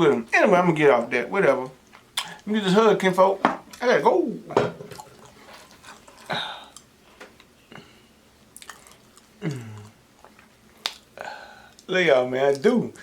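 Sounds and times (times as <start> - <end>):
chewing and mouth sounds: 4.9 - 11.9.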